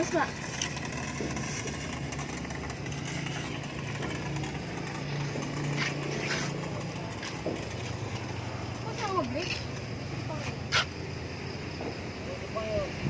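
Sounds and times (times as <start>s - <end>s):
vehicle engine humming: 0.0s - 13.0s
brief scratchy sounds: 5.7s - 6.7s.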